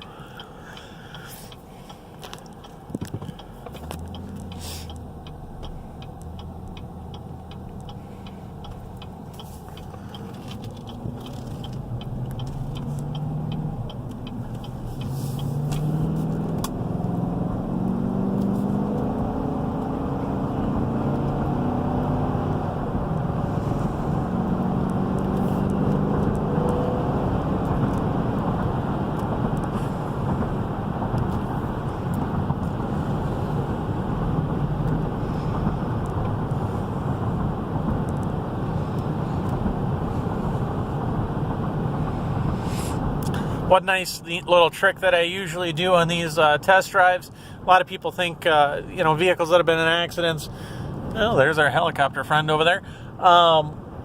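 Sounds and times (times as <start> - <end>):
steady ticking: 0.0 - 18.1
truck engine accelerating: 0.0 - 46.7
road noise: 0.0 - 54.0.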